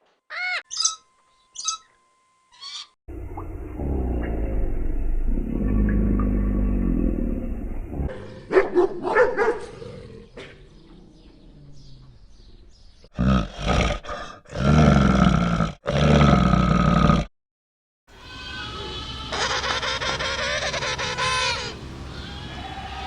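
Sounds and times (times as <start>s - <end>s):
animal calls: 18.2s - 23.0s.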